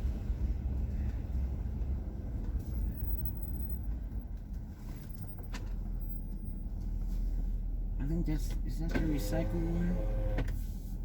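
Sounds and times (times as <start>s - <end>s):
car engine and tyres rumbling: 0.0s - 11.0s.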